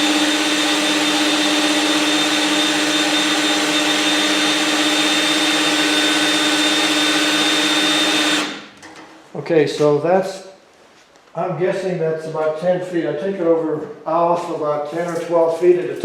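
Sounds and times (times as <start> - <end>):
electric drill motor whining: 0.0 - 8.7.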